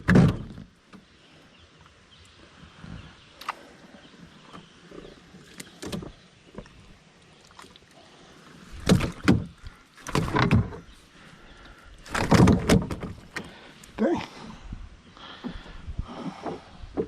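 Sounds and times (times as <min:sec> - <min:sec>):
knocking and rustling in a boat: 0:00.0 - 0:01.2, 0:04.1 - 0:07.8, 0:08.5 - 0:17.0.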